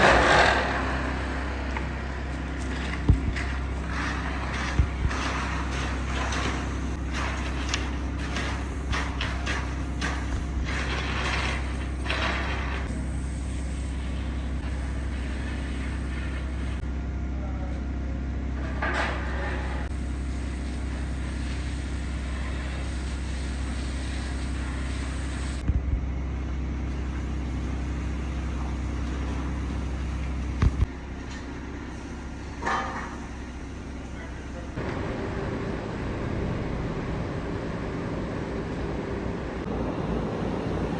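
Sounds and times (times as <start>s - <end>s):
rough scraping: 0.0s - 12.9s
diesel truck engine droning: 0.0s - 40.9s.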